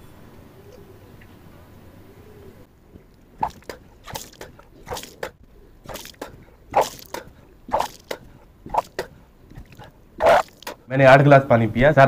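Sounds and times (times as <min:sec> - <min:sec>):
water splashing out: 0:03.2 - 0:10.8
person retching: 0:03.4 - 0:05.3, 0:05.9 - 0:10.8.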